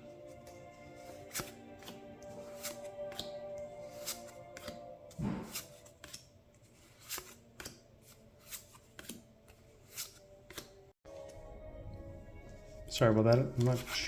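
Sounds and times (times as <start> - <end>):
trading cards snapping: 1.3 - 6.3, 8.4 - 9.2
thump: 5.2 - 5.6.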